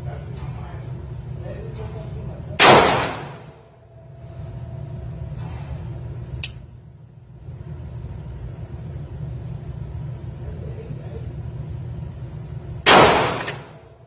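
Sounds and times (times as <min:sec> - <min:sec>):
pistol shot echo: 0:02.6 - 0:03.6, 0:12.9 - 0:13.8.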